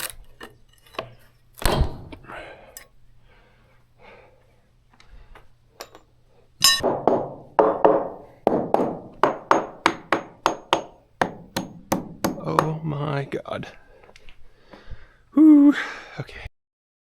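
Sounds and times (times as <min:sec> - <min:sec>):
hammer strikes ringing: 0:06.6 - 0:13.0.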